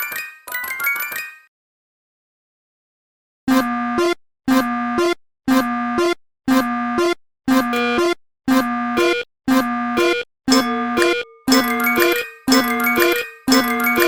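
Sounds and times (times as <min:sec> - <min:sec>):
two-note electronic beep: 0:07.7 - 0:08.2, 0:09.0 - 0:09.2, 0:10.0 - 0:14.0.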